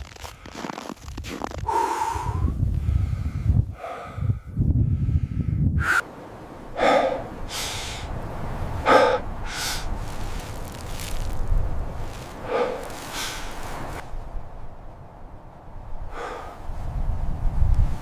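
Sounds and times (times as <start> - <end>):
heavy breathing: 1.6 - 6.1, 6.7 - 8.1, 8.8 - 10.4, 12.1 - 14.0, 16.1 - 16.6.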